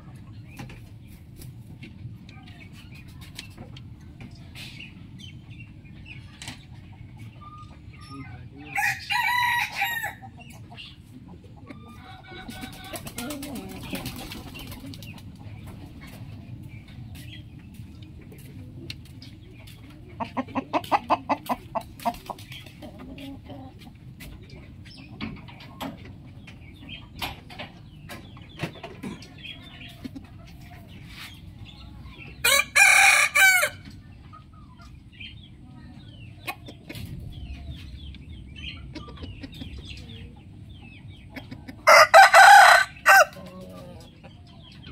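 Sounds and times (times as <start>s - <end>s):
roosters crowing: 8.7s - 10.4s, 32.4s - 33.9s, 41.8s - 44.0s.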